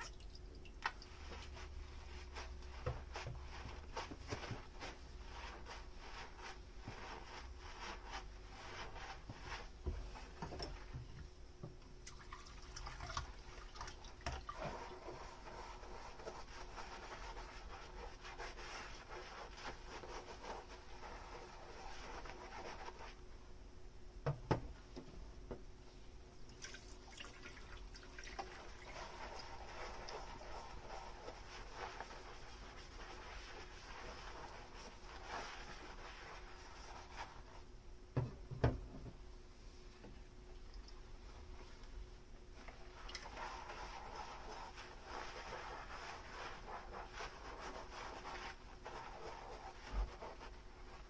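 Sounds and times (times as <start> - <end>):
running and dripping water: 0.0 - 1.4.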